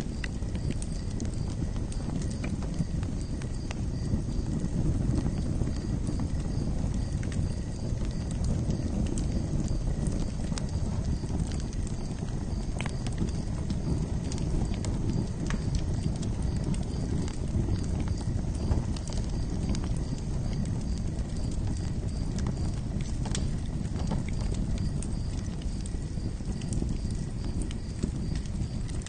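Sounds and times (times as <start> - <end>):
campfire crackling: 0.0 - 29.0.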